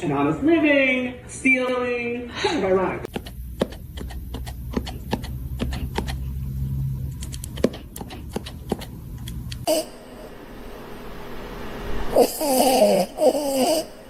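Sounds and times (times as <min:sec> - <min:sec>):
steady low hum: 0:03.0 - 0:14.0.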